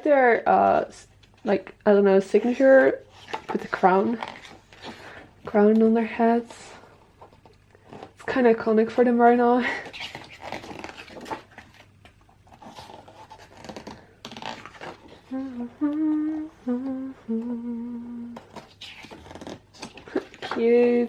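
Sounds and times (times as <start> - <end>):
soft rustling handling: 2.3 - 16.5
woman humming: 15.2 - 18.5.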